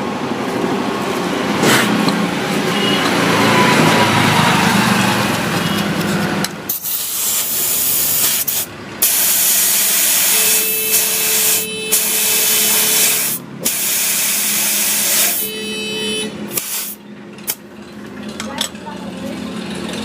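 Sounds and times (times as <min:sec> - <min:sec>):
compressed air hissing from hose: 0:06.7 - 0:15.5, 0:16.5 - 0:17.0.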